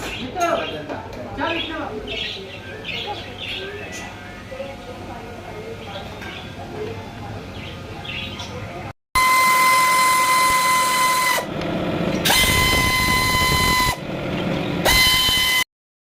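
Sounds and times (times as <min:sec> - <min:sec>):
power tool whining: 0:09.2 - 0:15.6.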